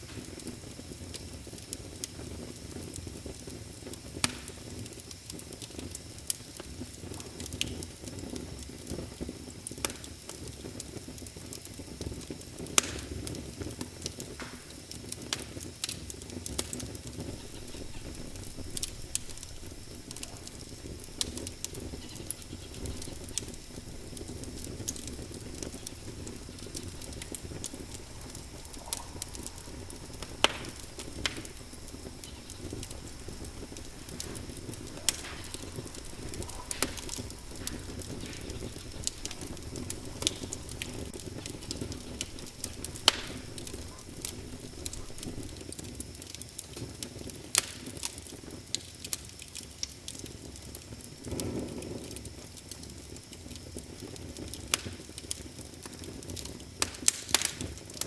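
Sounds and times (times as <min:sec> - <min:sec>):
fire flame rumble: 0:00.0 - 0:58.0
wood fire crackles and pops: 0:00.0 - 0:58.0.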